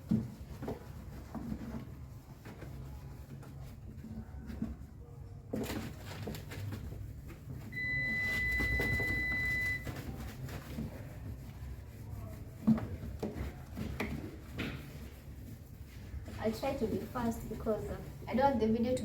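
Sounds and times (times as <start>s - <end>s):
electronic appliance beep: 7.8s - 9.8s.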